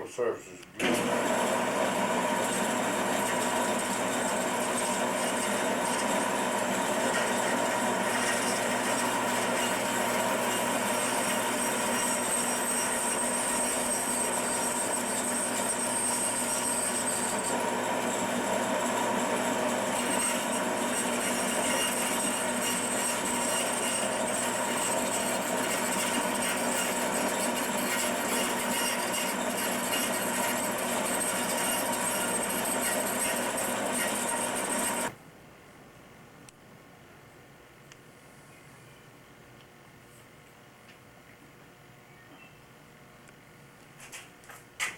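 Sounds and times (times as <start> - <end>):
electric power tool cutting wood: 0.8 - 35.2.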